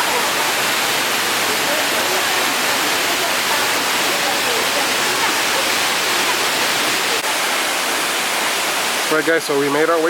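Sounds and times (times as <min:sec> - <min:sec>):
waterfall rushing: 0:00.0 - 0:10.0.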